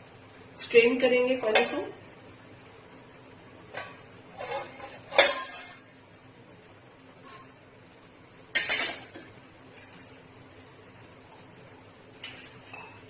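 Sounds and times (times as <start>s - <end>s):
kitchen utensils clinking: 3.8s - 5.8s, 8.6s - 9.3s
utensils clattering: 3.8s - 5.8s, 8.6s - 9.3s.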